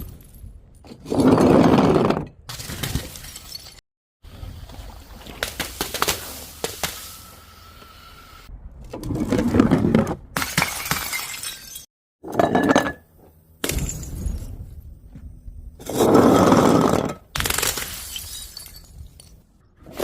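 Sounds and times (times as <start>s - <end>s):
glass bottles shattering: 2.6s - 3.8s, 10.4s - 13.0s, 13.6s - 14.5s, 17.6s - 19.4s.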